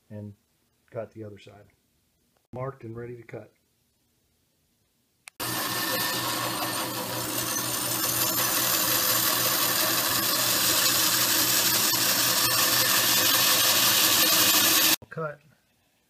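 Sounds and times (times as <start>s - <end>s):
bandsaw motor hum: 5.4s - 15.0s
blade whirring through wood: 5.4s - 15.0s.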